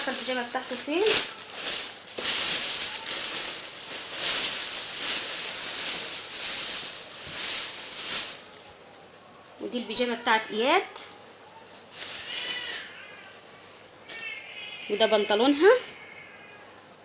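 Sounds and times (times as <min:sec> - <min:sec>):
plastic bag crinkling: 0:00.0 - 0:08.8, 0:11.8 - 0:13.2.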